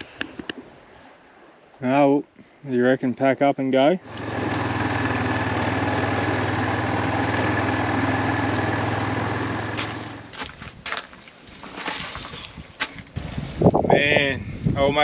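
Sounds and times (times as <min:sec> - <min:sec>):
engine running steadily: 0:04.0 - 0:10.4.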